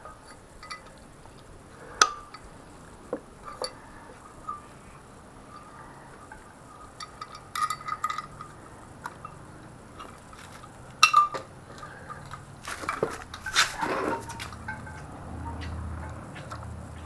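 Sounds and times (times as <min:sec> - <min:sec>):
metal parts clinking: 0:03.4 - 0:15.1.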